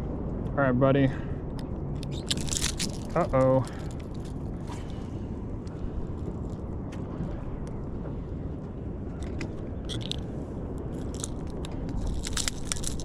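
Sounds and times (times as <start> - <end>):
water around a boat: 0.0 - 13.0
wind: 0.0 - 13.0.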